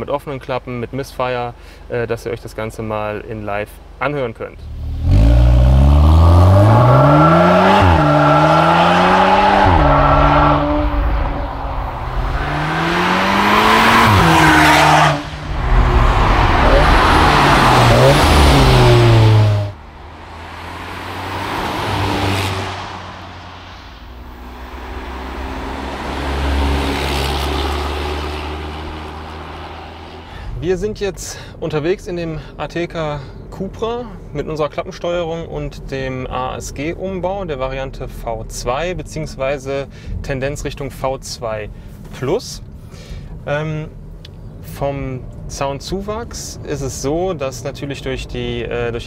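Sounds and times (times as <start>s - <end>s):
car engine revving hard: 4.7s - 30.3s.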